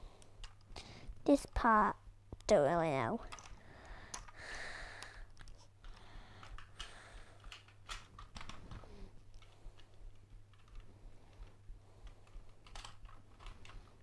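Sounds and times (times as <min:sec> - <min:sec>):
plastic toy parts clicking: 0:03.2 - 0:04.4, 0:05.0 - 0:09.9, 0:10.5 - 0:14.0.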